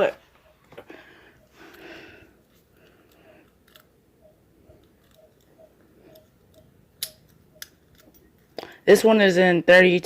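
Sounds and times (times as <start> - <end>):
metallic clicks of lock picks: 3.0 - 3.9, 4.8 - 5.5.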